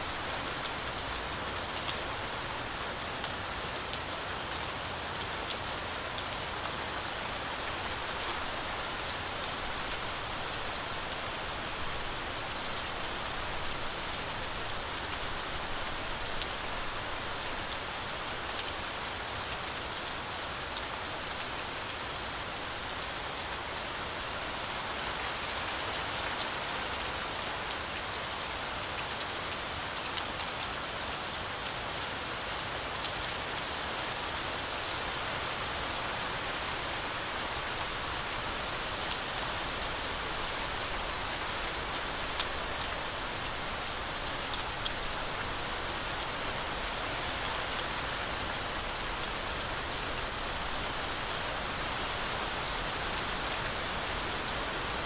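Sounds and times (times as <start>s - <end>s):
heavy rain through trees: 0.0s - 55.0s.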